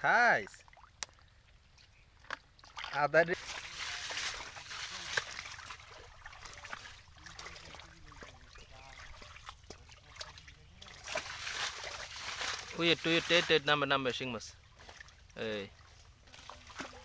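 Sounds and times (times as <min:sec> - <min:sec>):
shallow water trickling and splashing: 0:00.0 - 0:17.0.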